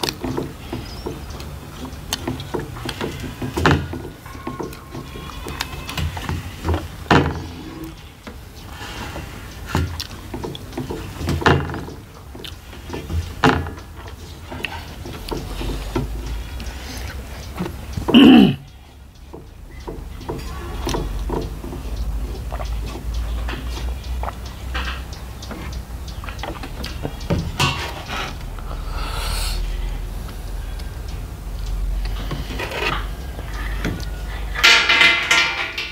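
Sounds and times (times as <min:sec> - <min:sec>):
chewing: 0:08.7 - 0:11.2, 0:12.2 - 0:19.0, 0:19.7 - 0:28.9.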